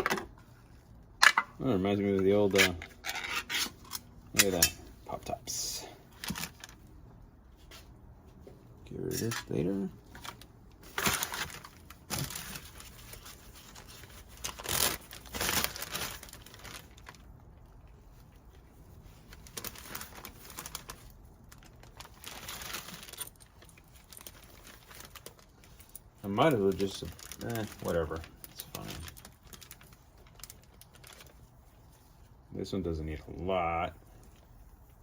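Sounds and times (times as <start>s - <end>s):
plastic bag crinkling: 9.2s - 32.3s.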